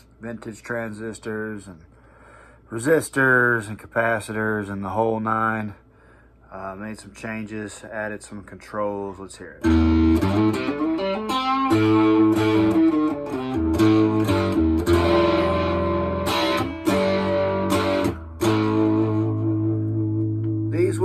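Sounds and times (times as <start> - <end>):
fuzz electric guitar: 9.6 - 21.0.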